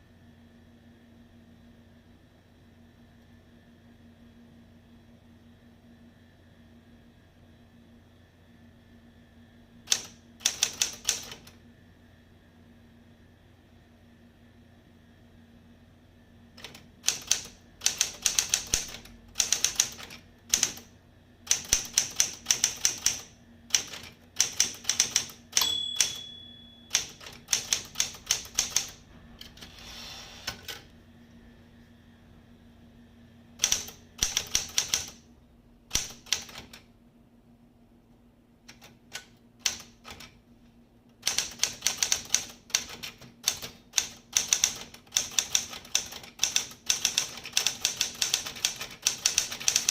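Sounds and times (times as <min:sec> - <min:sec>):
typewriter key strikes: 0:23.8 - 0:29.0
typewriter margin bell ringing: 0:25.6 - 0:27.2
typewriter carriage return rasp: 0:41.2 - 0:49.9.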